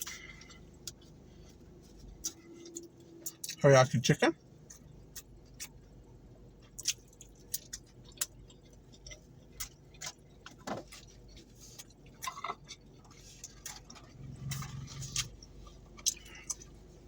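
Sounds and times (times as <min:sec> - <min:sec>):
chewing clicks and smacks: 0:04.6 - 0:10.6, 0:11.8 - 0:16.8
short low hum: 0:13.9 - 0:15.8.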